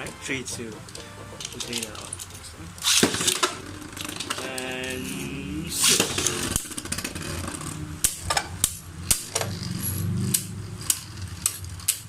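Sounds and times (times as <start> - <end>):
spinning tops whirring: 0.5 - 12.0
spinning tops clashing clicks: 0.8 - 4.9, 5.8 - 12.0.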